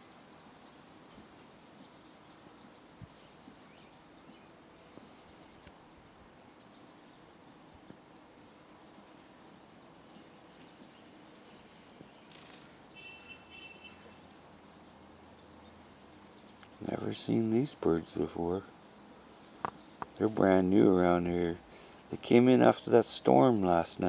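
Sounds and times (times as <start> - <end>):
faint bird chirps: 0.0 - 17.9
outdoor background hiss: 0.0 - 24.0.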